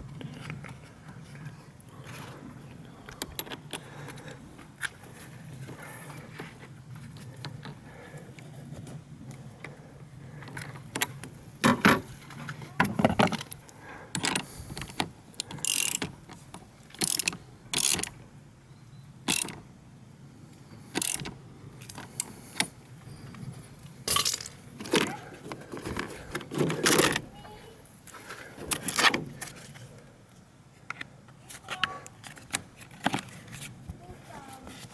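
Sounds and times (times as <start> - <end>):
ratchet wrench clicking: 15.4 - 16.1, 17.0 - 18.2, 19.3 - 19.6, 21.0 - 21.3.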